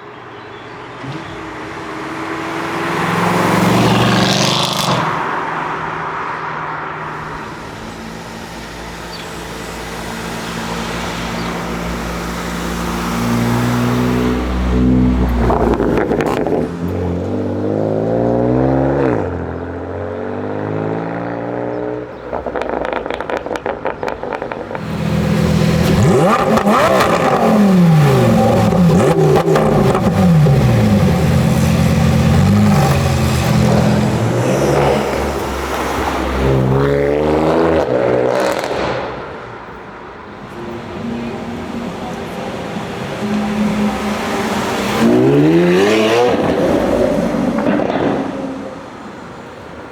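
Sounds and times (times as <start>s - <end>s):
car engines revving: 0.8s - 49.9s
exhaust crackles and pops: 22.3s - 30.2s, 38.3s - 39.2s.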